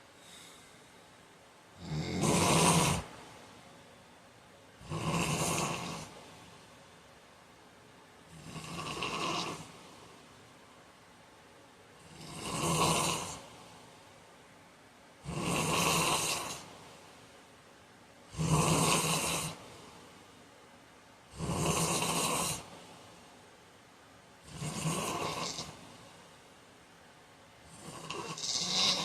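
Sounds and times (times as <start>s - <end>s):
man snoring: 1.8s - 3.1s, 4.8s - 6.2s, 8.3s - 9.7s, 12.0s - 13.5s, 15.2s - 16.7s, 18.3s - 19.6s, 21.3s - 22.7s, 24.5s - 25.8s, 27.7s - 29.0s.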